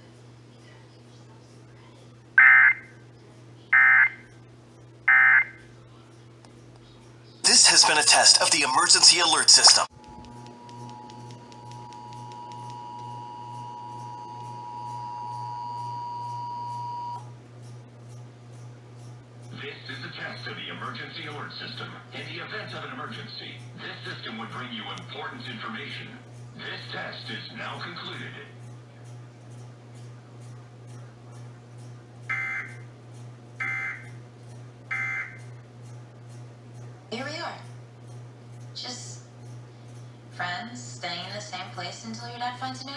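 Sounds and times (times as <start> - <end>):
steady low hum: 0.0 - 42.9
harsh alert data tones: 2.4 - 2.9, 3.8 - 4.3, 5.1 - 5.6, 7.5 - 9.9, 32.3 - 32.8, 33.6 - 34.1, 34.9 - 35.4
two-tone alert beep: 3.8 - 4.2, 5.1 - 5.6, 32.3 - 32.8, 33.6 - 34.1, 34.9 - 35.4
low hum: 9.8 - 17.3.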